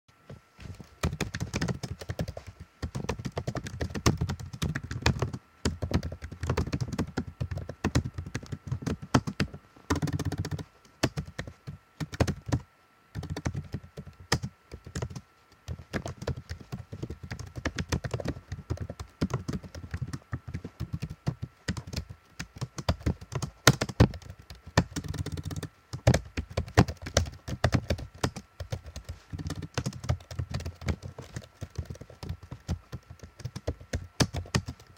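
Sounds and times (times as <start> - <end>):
fast typing on keyboard: 0.8 - 34.9.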